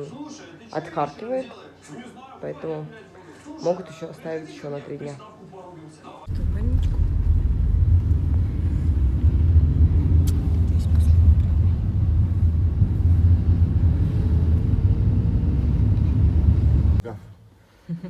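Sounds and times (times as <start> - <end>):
loud low rumble: 6.3 - 17.0.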